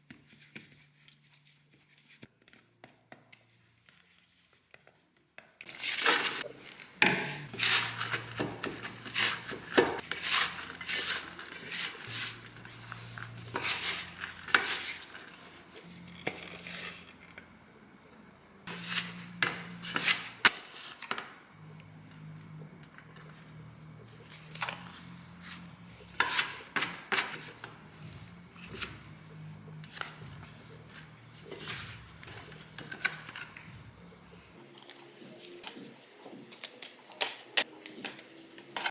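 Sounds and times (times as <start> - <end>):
utensils scraping and clinking on cookware: 5.7 - 36.0.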